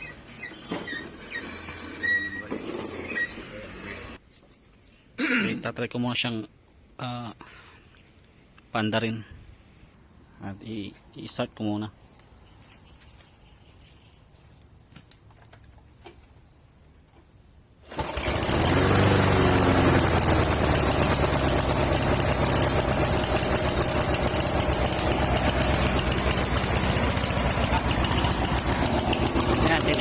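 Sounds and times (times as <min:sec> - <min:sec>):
lawn mower engine starting and running: 0:00.0 - 0:04.2, 0:17.8 - 0:30.0.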